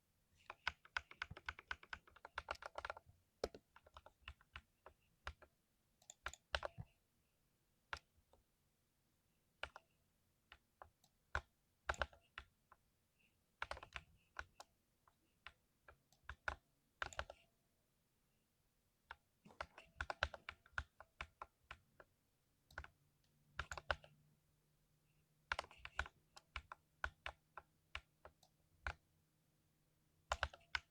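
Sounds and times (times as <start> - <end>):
mechanical keyboard typing: 0.5 - 4.7, 13.6 - 14.6, 16.2 - 17.4, 19.5 - 22.1, 23.6 - 24.2, 25.5 - 29.0, 30.3 - 30.9.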